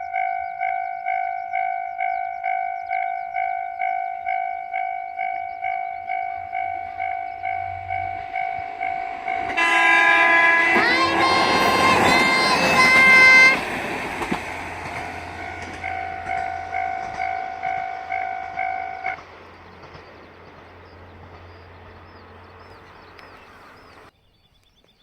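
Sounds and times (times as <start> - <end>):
train horn: 0.0 - 20.0
level crossing warning bell: 0.0 - 24.1
train passing: 0.0 - 24.1.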